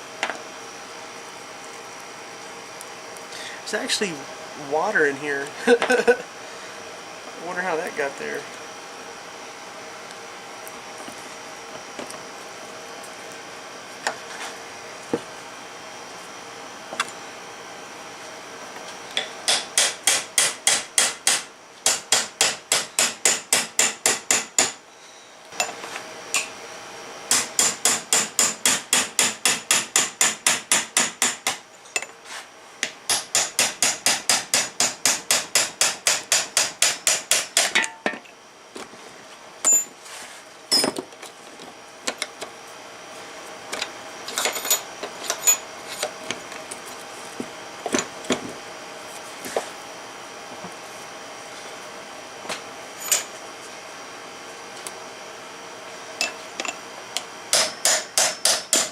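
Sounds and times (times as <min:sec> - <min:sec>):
hammer striking metal: 0:57.5 - 0:58.9.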